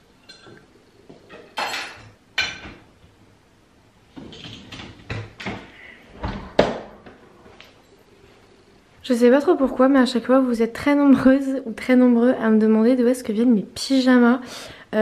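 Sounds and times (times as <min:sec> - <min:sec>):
household knocks and clatters: 0:04.1 - 0:07.2.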